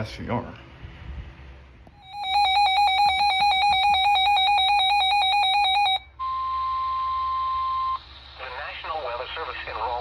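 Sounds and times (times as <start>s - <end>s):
steady beep tone: 2.0s - 8.0s
two-tone warble alarm: 2.0s - 8.0s.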